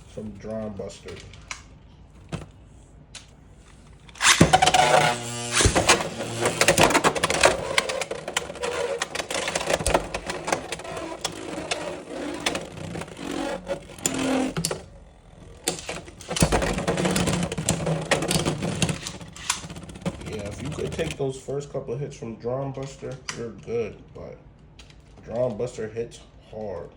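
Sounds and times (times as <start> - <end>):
launcher whirring zip: 4.1 - 17.2.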